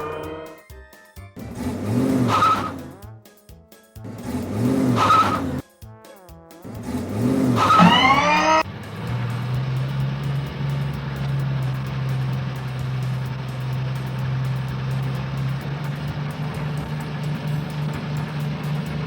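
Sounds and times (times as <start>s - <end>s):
cartoon engine revving with hiss: 1.4s - 3.0s, 4.1s - 5.6s, 6.7s - 12.2s
engine humming steadily: 1.4s - 3.0s, 4.0s - 5.6s, 6.7s - 19.0s.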